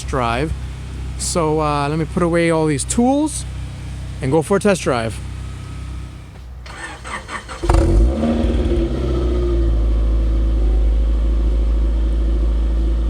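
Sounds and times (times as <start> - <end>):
car engine idling: 0.0 - 13.0
starter motor cranking: 6.6 - 9.6.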